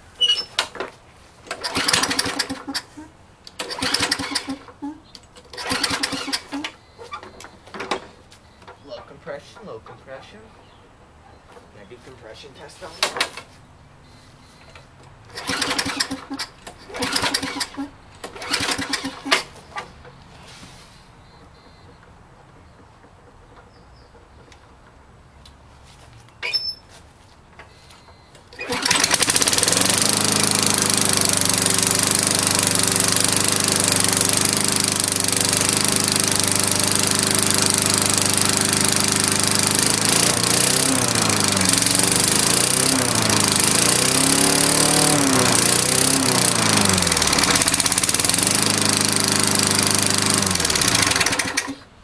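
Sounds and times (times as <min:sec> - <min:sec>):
lawnmower engine running: 0:00.0 - 0:08.0, 0:15.2 - 0:19.9, 0:28.5 - 0:52.0.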